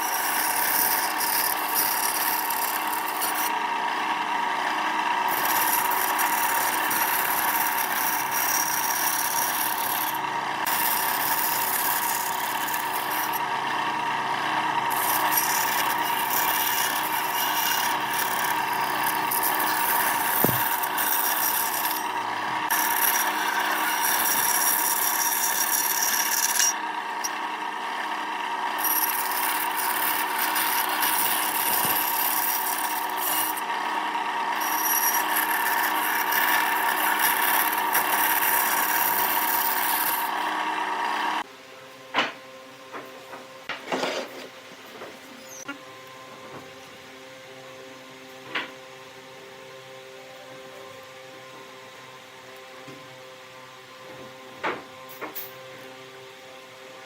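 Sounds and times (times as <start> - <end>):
tool scraping spinning wood: 0.0 - 41.5, 42.2 - 46.9
wood lathe running: 0.0 - 41.5.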